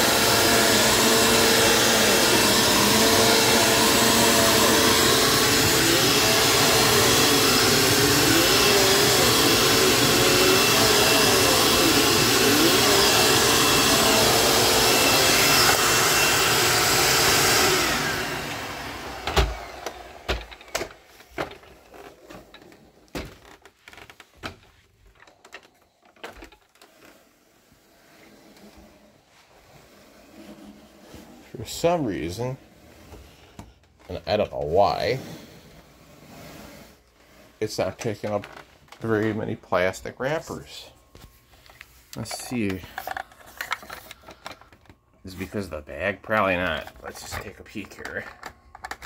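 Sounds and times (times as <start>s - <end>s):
vacuum cleaner running: 0.0s - 24.1s, 26.2s - 49.0s.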